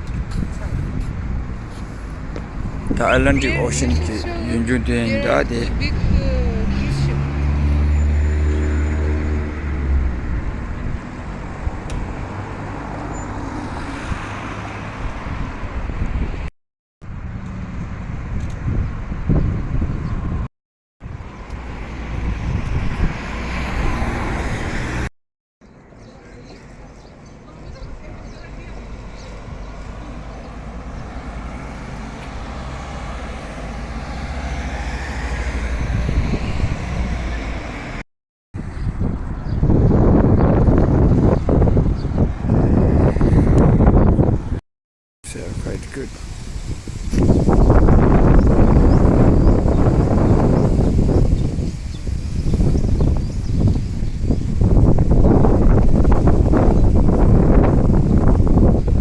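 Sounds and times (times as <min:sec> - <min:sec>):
vehicle engine hum: 0:00.0 - 0:16.4, 0:28.0 - 0:38.0
steady traffic rushing noise: 0:00.0 - 0:25.1, 0:25.7 - 0:38.0, 0:38.6 - 0:44.6, 0:45.2 - 0:59.0
wind rumble on microphone: 0:00.0 - 0:25.1, 0:27.6 - 0:38.0, 0:38.6 - 0:44.6, 0:45.3 - 0:59.0.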